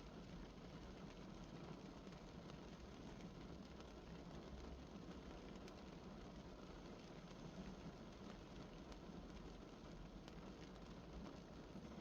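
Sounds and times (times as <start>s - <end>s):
light rain on a car: 0.0s - 12.0s.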